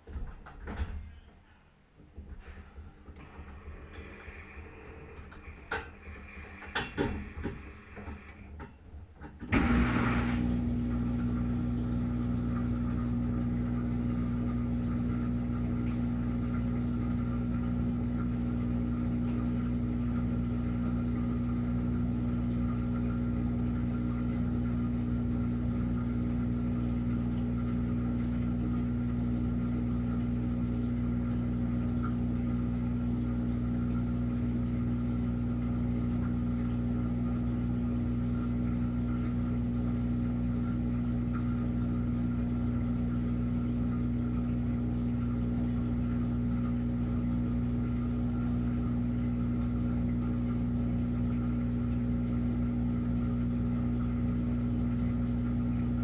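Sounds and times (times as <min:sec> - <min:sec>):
washing machine humming: 0:00.0 - 0:56.0.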